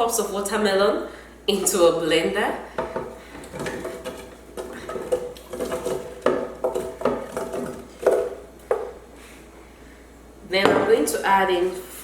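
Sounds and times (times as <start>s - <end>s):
fruit pieces clattering into blender jar: 2.8s - 8.9s.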